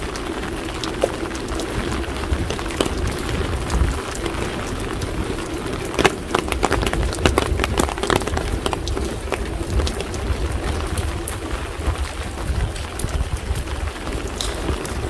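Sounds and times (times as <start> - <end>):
rain taps and drips: 0.0 - 15.0
steady rain noise: 0.0 - 15.0.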